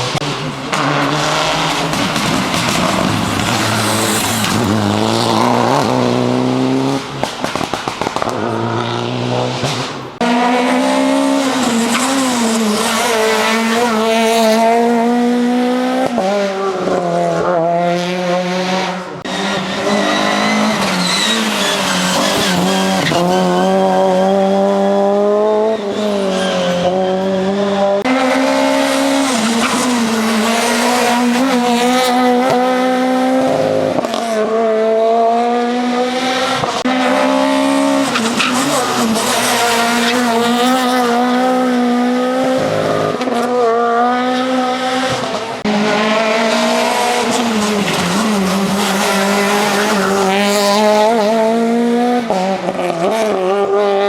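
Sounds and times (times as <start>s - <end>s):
rally car engine revving: 0.0s - 54.0s.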